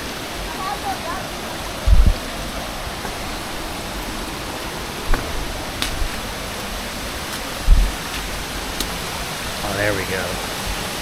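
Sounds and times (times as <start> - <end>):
creek water flowing: 0.0 - 11.0
dull thumps: 7.4 - 9.0.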